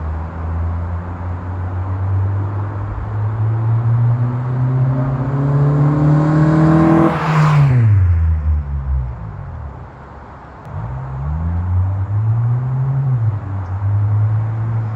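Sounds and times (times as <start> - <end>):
car accelerating past: 2.0 - 9.4.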